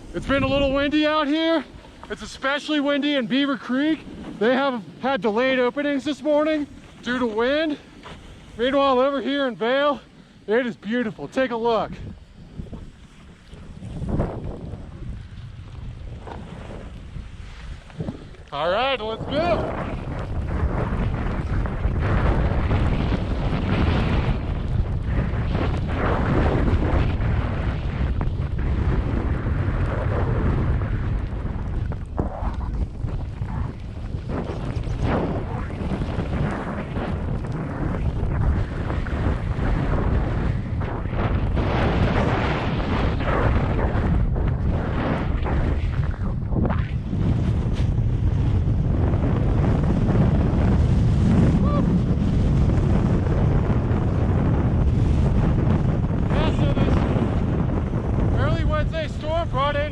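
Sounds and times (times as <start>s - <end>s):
wind buffeting microphone: 0.0s - 59.9s
skis hissing through powder snow: 16.1s - 20.8s.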